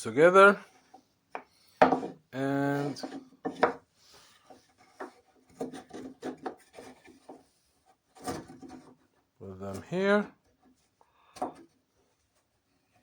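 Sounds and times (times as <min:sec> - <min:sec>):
wooden knocks and rubs: 0:00.8 - 0:02.2, 0:02.8 - 0:09.8.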